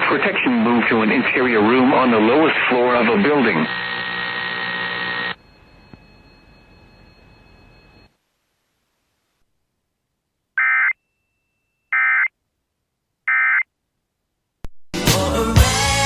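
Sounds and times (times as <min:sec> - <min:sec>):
music: 0:15.0 - 0:16.0.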